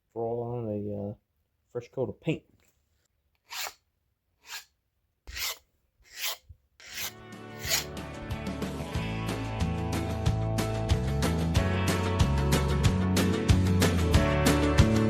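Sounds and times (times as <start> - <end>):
short rasping hisses: 4.4 - 4.7, 5.3 - 7.9
background guitar music: 7.2 - 15.0.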